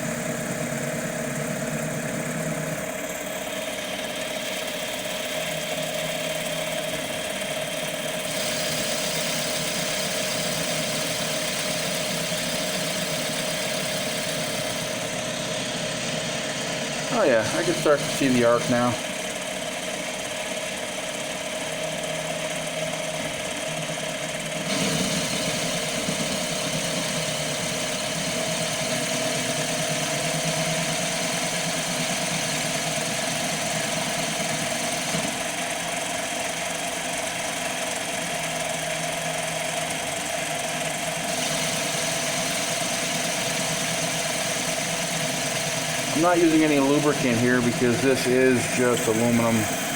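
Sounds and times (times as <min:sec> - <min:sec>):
lathe motor and spindle whine: 0:00.0 - 0:49.9
metal cutting noise: 0:08.0 - 0:19.2, 0:24.6 - 0:35.8, 0:41.1 - 0:49.9.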